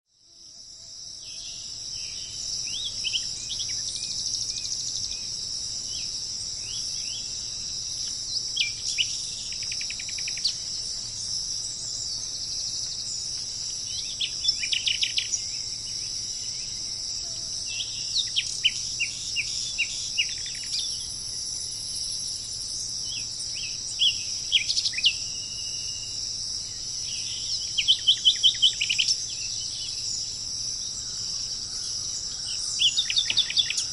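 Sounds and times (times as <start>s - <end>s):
crickets chirping: 0.1s - 33.9s
birds chirping and whistling: 8.1s - 16.6s, 17.7s - 30.4s, 31.0s - 33.9s.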